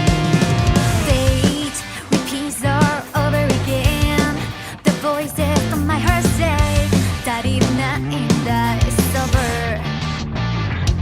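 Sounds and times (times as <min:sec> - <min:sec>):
rock song with singing: 0:00.0 - 0:11.0.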